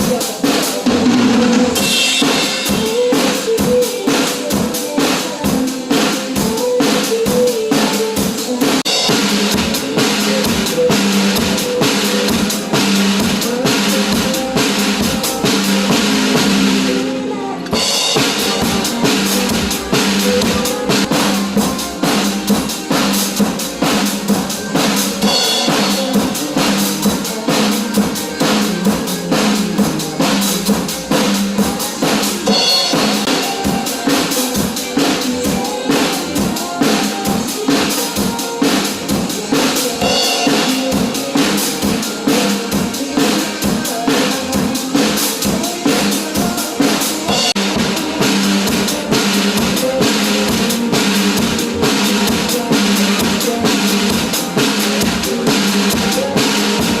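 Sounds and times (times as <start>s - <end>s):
drum kit playing: 0.0s - 57.0s
pop backing track: 0.0s - 57.0s.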